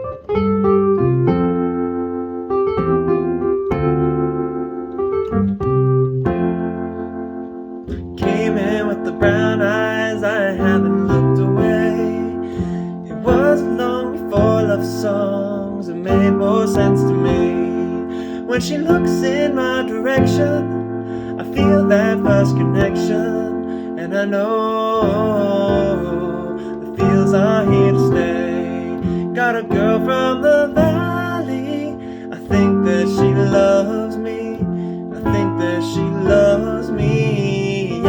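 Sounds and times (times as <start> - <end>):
piano chords: 0.0 - 38.0.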